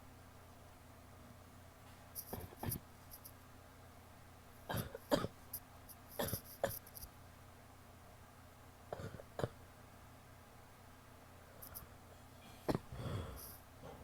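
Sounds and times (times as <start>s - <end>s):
woman coughing wet coughs: 4.7s - 5.4s, 6.2s - 6.9s, 9.0s - 9.6s.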